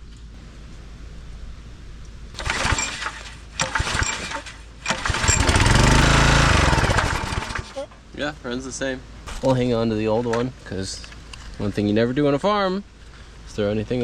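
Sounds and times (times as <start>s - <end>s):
pull-start cord pulls: 2.4s - 7.9s
small gas engine running: 2.4s - 7.9s.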